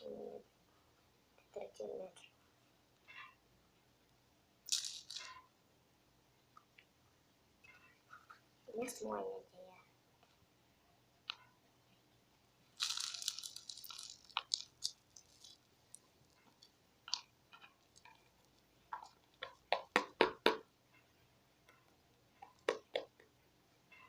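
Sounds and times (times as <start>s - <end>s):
packaging crinkling and crunching: 4.7s - 5.4s, 12.8s - 16.4s
detergent pouring: 12.8s - 15.5s.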